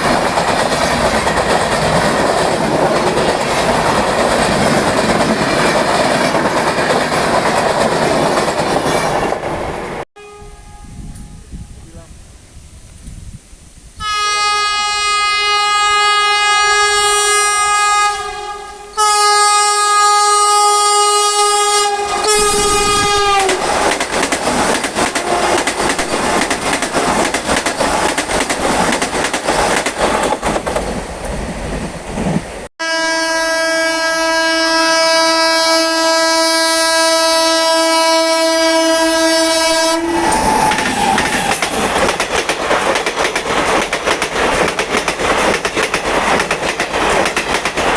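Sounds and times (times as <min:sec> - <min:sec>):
passing train clickety-clack: 0:00.0 - 0:10.0, 0:21.0 - 0:32.7, 0:39.2 - 0:47.9
train horn blasts: 0:10.2 - 0:12.0, 0:14.0 - 0:23.7, 0:32.8 - 0:41.2
low-pitched train horn: 0:10.2 - 0:12.2, 0:14.0 - 0:23.7, 0:32.8 - 0:41.6.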